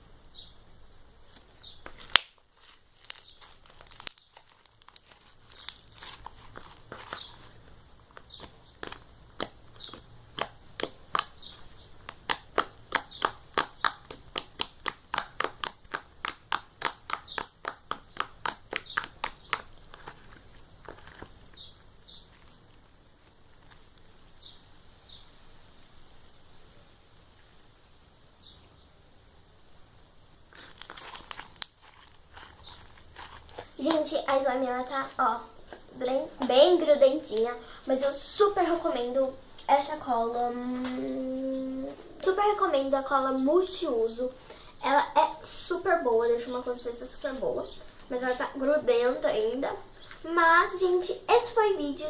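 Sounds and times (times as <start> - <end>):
slime squeezed by hand: 1.9 - 7.5, 30.5 - 34.0.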